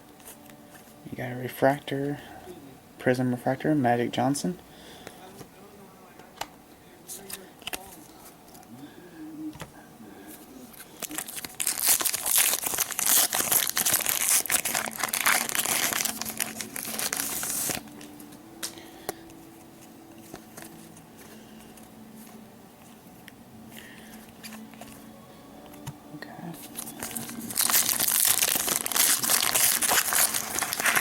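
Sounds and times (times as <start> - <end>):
wrapper tearing and crinkling: 10.8 - 18.1, 26.7 - 31.0.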